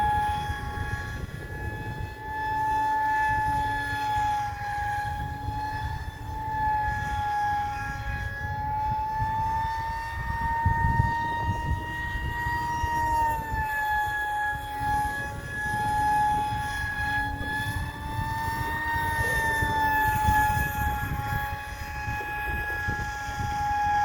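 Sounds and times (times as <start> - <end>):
electric motor and propeller whining: 0.0 - 24.0.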